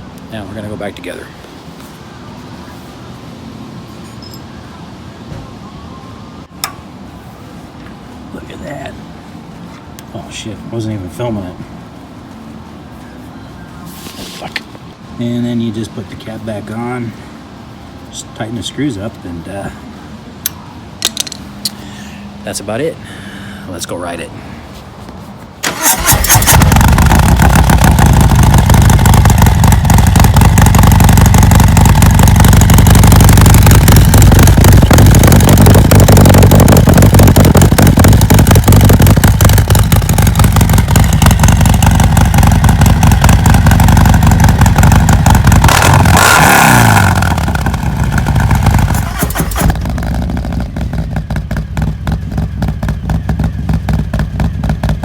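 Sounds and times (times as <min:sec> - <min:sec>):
motorcycle engine idling: 0:25.8 - 0:55.0.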